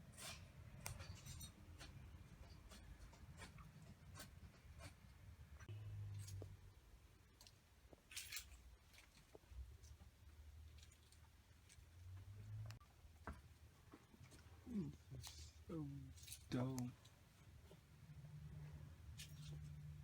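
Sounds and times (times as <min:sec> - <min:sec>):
small clicks and rustles: 0:05.6 - 0:20.0.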